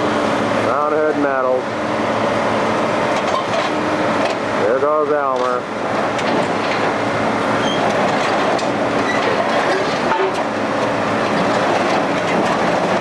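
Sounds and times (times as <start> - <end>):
crane rattling clatter: 2.1 - 13.0
high metal squeals: 7.6 - 7.9, 9.0 - 10.5.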